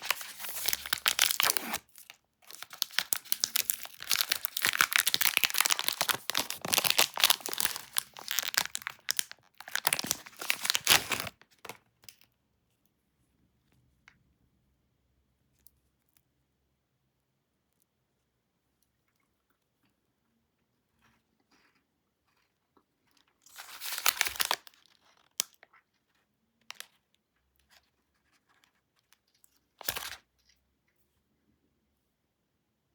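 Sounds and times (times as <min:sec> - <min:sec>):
cereal bar crackling and crunching: 0:00.0 - 0:11.8, 0:23.1 - 0:25.6
plastic wrapper crinkling: 0:00.0 - 0:11.8, 0:23.5 - 0:25.6.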